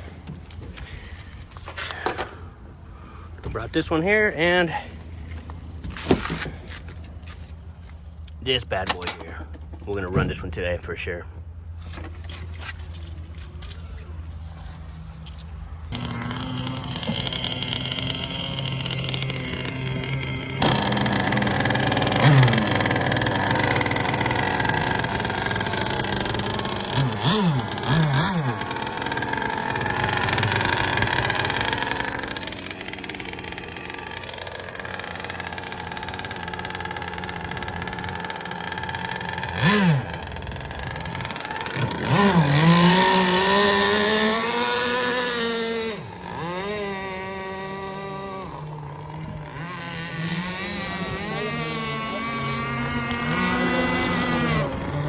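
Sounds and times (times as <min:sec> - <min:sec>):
model boat engine revving: 0:15.8 - 0:55.0.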